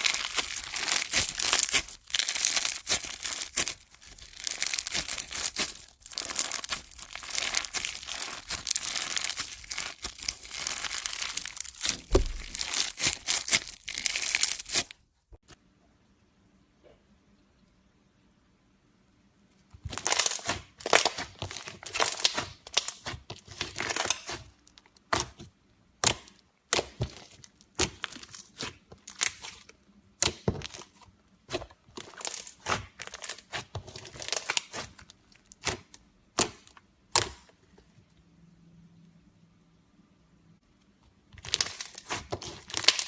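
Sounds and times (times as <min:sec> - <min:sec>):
crisp crackling and snaps: 0:00.0 - 0:15.1, 0:19.7 - 0:25.4, 0:26.0 - 0:37.5, 0:41.3 - 0:43.0.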